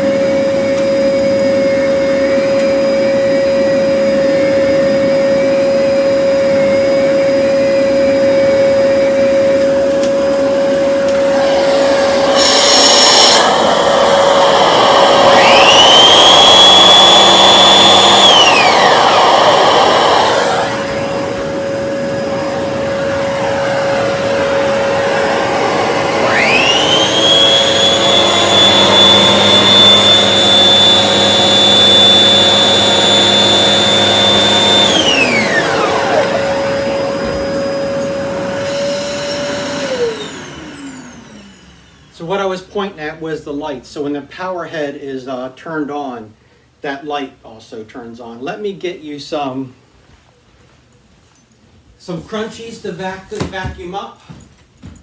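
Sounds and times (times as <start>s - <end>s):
brush motor whine: 0.0s - 42.1s
vacuum cleaner motor hum: 0.0s - 42.5s.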